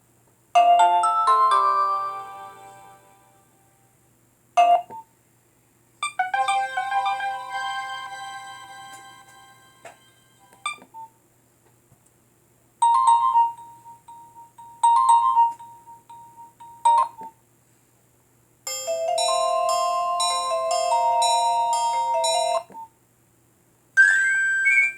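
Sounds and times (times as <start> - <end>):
mobile phone electronic ringtones: 12.8 - 17.2.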